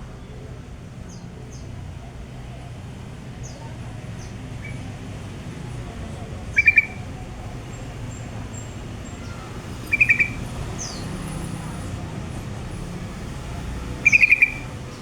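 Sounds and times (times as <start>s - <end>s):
small bird chirping: 4.2s - 5.0s, 6.4s - 12.0s, 13.1s - 15.0s.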